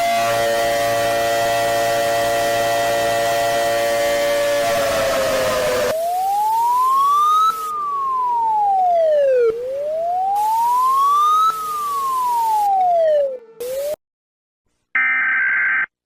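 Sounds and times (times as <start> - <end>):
deep chord: 0.0 - 6.0
electronic wailing siren: 0.0 - 14.0
steady low tone: 0.1 - 6.0.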